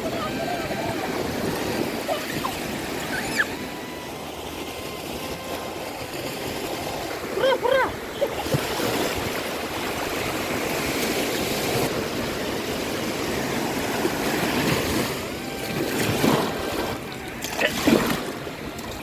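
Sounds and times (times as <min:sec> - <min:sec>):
high voice: 0:00.0 - 0:01.3, 0:01.9 - 0:04.0, 0:07.3 - 0:08.0
waves breaking on a beach: 0:00.0 - 0:19.0.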